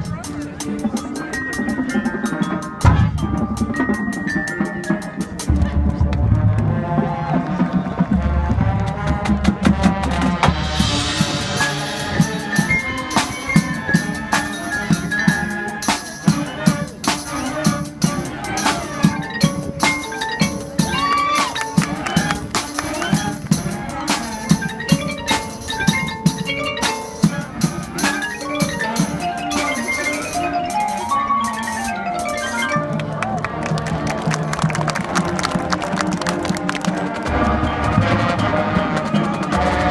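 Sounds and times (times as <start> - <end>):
marimbas and glockenspiel runs: 0.0 - 6.0, 10.6 - 34.4
drumline drums striking: 0.0 - 39.9
marching band playing: 0.0 - 39.9
wind instruments sustained notes: 0.0 - 39.9.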